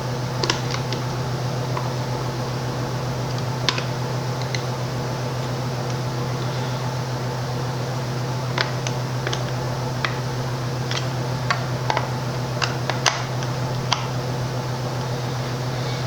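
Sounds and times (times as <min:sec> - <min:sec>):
steady low hum: 0:00.0 - 0:16.0
small parts clicking and tapping: 0:10.9 - 0:14.1.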